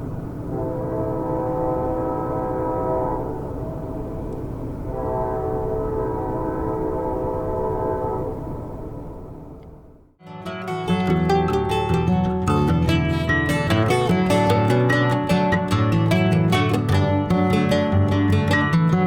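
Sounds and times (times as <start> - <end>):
train rumbling: 0.0 - 10.2
steam locomotive whistle: 0.5 - 4.2, 4.9 - 8.6.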